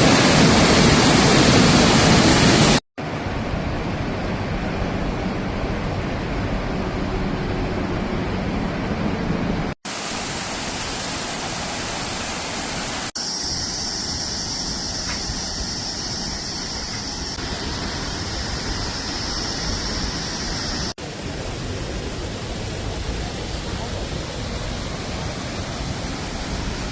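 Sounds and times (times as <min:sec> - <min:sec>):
waterfall rushing: 0:00.0 - 0:03.2, 0:09.9 - 0:26.9.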